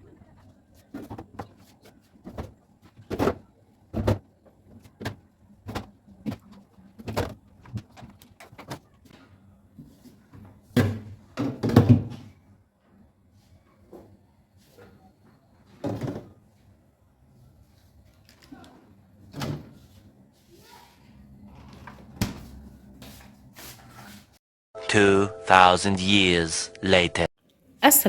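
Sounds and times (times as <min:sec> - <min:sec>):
knocks and thuds: 0:02.2 - 0:04.2.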